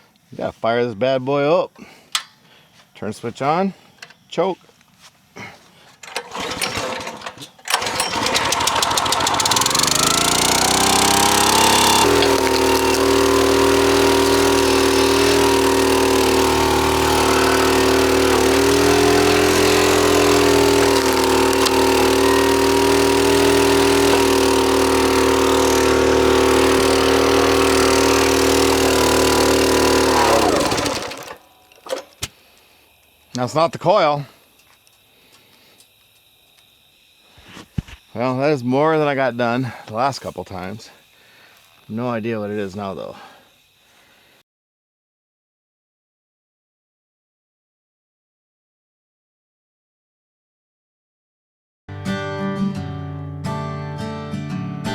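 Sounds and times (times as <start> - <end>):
small engine running: 5.4 - 38.0
recoil starter pull: 5.9 - 33.6.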